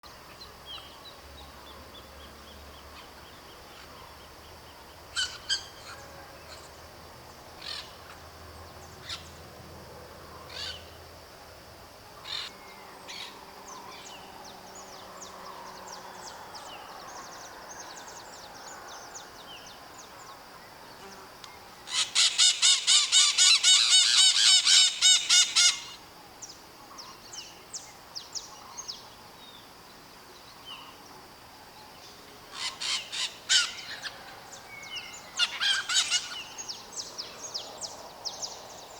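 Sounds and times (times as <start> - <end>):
parakeets screeching calls: 21.9 - 26.0, 32.5 - 34.1, 35.4 - 36.7.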